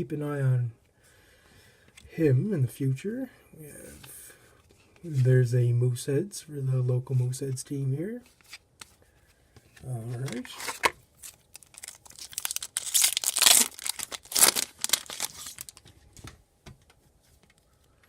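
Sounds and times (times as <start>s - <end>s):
foil wrapper tearing and crinkling: 10.7s - 15.9s.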